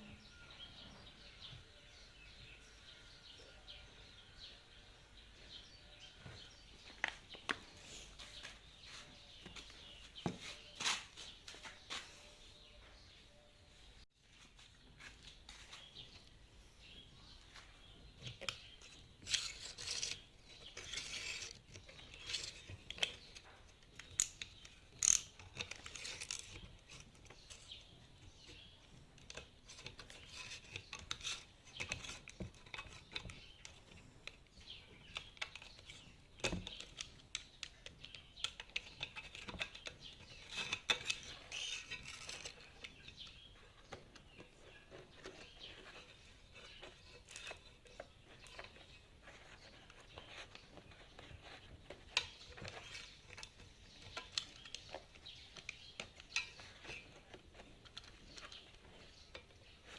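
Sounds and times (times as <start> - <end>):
hand tools scraping: 18.3 - 59.9.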